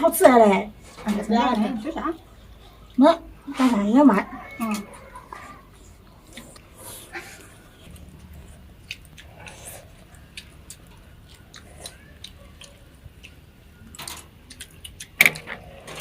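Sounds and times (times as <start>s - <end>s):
people chewing: 0.0s - 16.0s.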